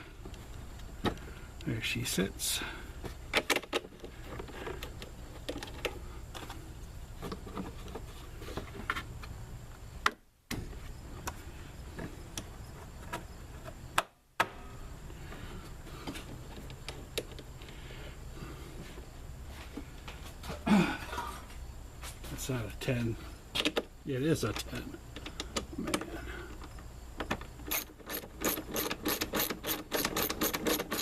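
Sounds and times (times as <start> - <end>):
steady low hum: 0.0 - 30.2
hand tools and parts clattering: 20.4 - 21.6, 24.4 - 31.0.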